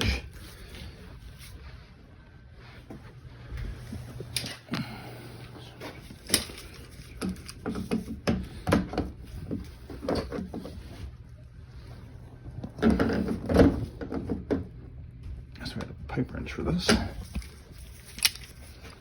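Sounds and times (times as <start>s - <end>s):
steady low hum: 0.0s - 19.0s
pipe fittings and tools clicking: 5.8s - 11.0s, 16.8s - 19.0s.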